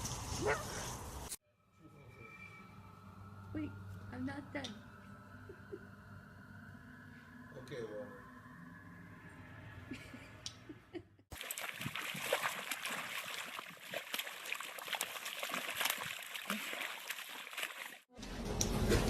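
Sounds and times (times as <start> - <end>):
water splashing and dripping: 11.3 - 18.1.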